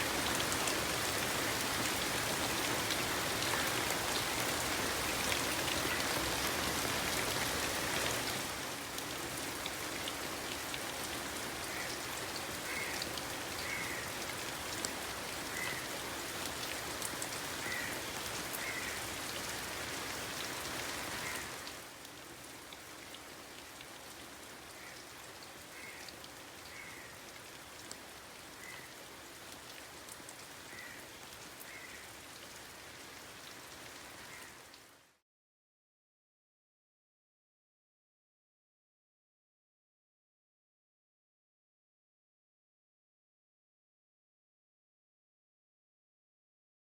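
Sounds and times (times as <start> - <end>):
steady rain falling: 0.0 - 35.2.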